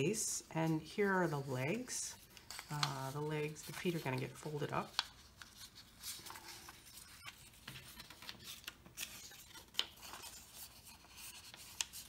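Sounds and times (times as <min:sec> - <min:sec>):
paper rustling and crinkling: 0:00.8 - 0:12.0.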